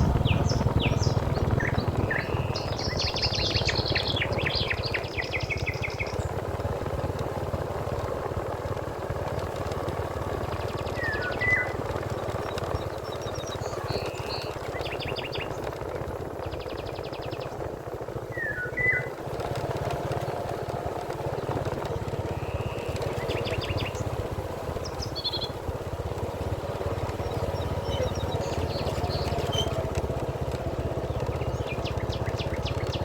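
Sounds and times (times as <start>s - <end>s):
birds chirping and trilling: 0.0s - 6.4s, 10.6s - 15.7s, 18.3s - 19.2s, 21.4s - 25.6s, 27.1s - 29.8s, 31.1s - 33.0s.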